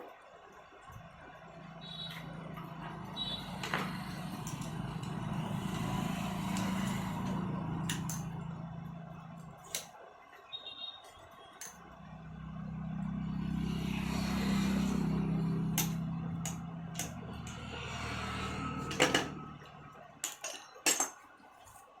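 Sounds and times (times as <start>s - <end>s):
electric drill motor humming: 1.8s - 9.6s.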